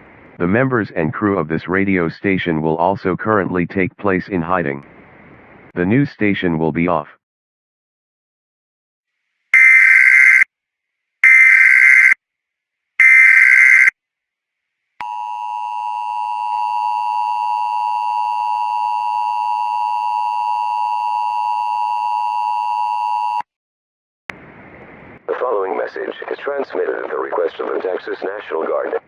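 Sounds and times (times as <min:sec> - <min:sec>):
data tone bursts: 0:09.6 - 0:10.4, 0:11.2 - 0:12.2, 0:13.0 - 0:13.9
two-tone attention signal: 0:09.6 - 0:10.4, 0:11.2 - 0:12.2.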